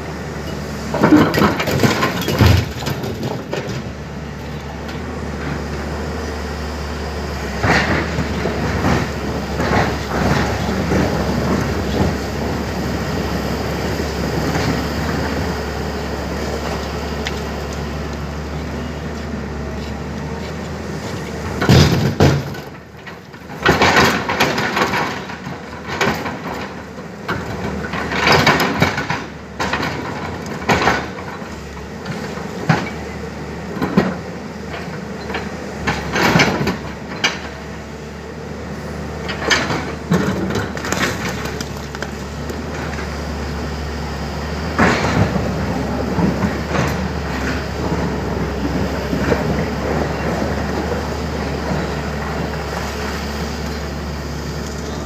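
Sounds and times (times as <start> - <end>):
excavator diesel engine running: 0.0 - 55.0
rock crashing against metal: 1.0 - 3.9.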